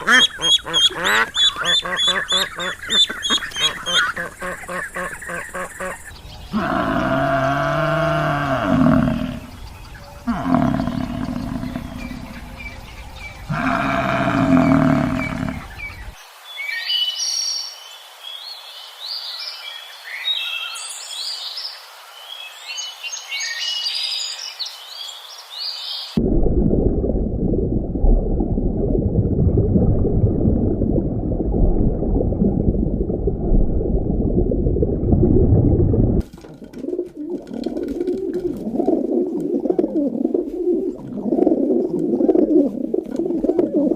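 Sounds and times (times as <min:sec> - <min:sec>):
long pitched animal calls: 0:06.5 - 0:09.6, 0:10.2 - 0:12.7, 0:13.5 - 0:16.1.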